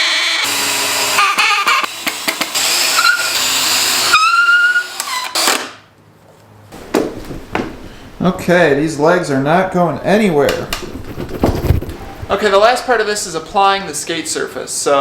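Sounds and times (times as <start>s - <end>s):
power drill driving screws: 0.0s - 5.8s.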